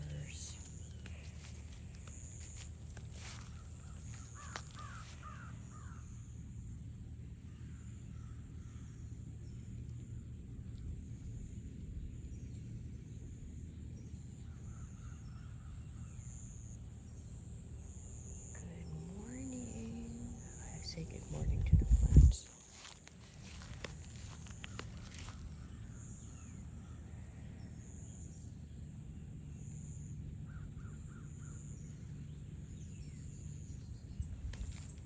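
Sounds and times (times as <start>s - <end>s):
distant crows cawing: 1.0s - 6.4s, 7.5s - 9.1s, 22.7s - 27.4s, 30.4s - 31.8s
low rumble: 16.8s - 26.0s.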